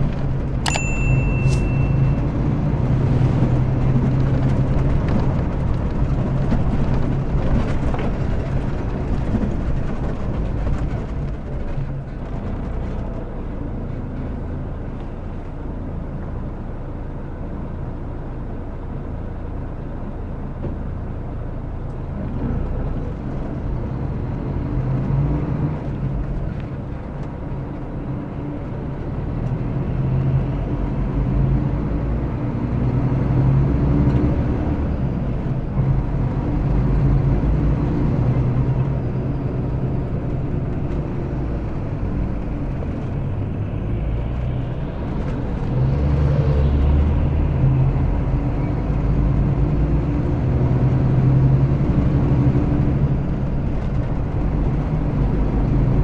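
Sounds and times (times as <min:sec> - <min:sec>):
bus diesel engine pulling away: 0:01.7 - 0:56.0.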